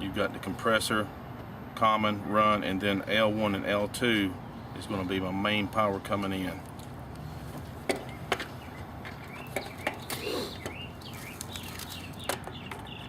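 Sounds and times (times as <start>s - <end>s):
bird chirps: 7.8s - 13.0s.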